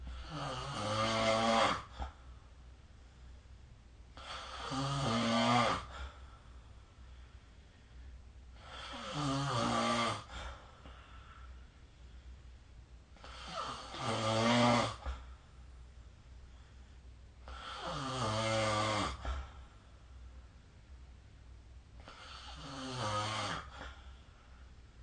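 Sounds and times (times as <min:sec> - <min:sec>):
person snoring: 0:00.1 - 0:02.2, 0:04.2 - 0:06.1, 0:08.6 - 0:10.6, 0:13.2 - 0:15.2, 0:17.5 - 0:19.6, 0:22.0 - 0:24.0.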